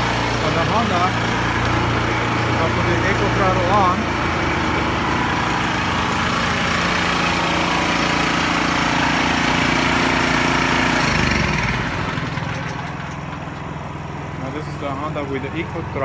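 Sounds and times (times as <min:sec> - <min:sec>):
generators running: 0:00.0 - 0:16.0.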